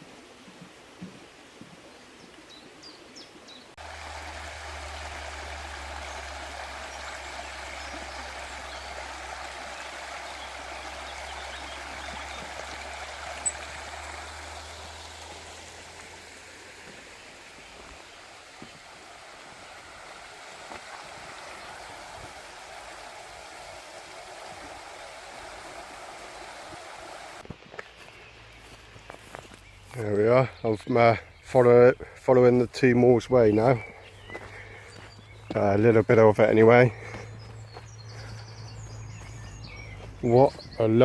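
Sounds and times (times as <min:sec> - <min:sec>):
stream running: 0:00.0 - 0:41.0
faint bird chirps: 0:05.9 - 0:15.4.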